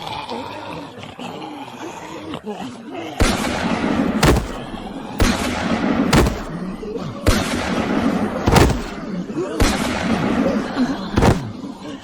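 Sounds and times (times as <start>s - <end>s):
gunshots: 4.2s - 7.7s, 8.5s - 10.2s, 10.8s - 11.5s.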